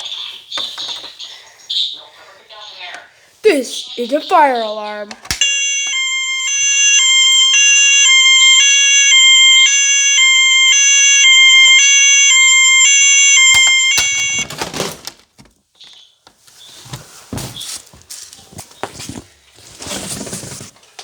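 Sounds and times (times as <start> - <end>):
electronic fire alarm: 5.4 - 14.6.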